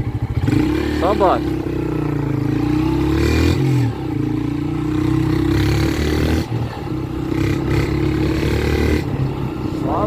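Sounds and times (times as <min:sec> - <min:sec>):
motorcycle engine running: 0:00.0 - 0:10.0.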